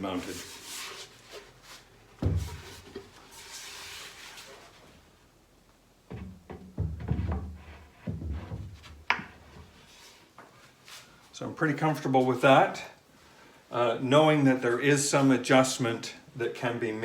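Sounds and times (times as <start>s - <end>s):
soft rustle: 0.0s - 5.4s, 8.7s - 11.4s
cabinet door thump: 2.2s - 2.8s
wood knocking against wood: 2.2s - 3.0s, 6.1s - 9.5s.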